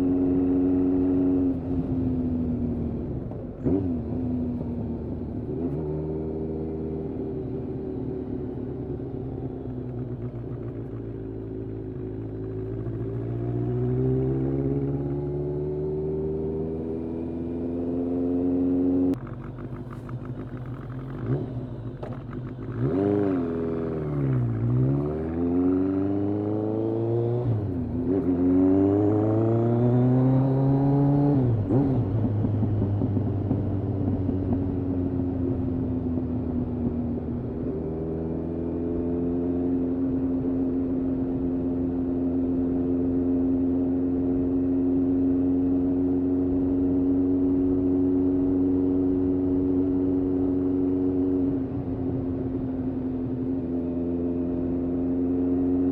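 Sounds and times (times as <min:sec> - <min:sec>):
motorcycle engine revving: 0:00.0 - 0:55.9.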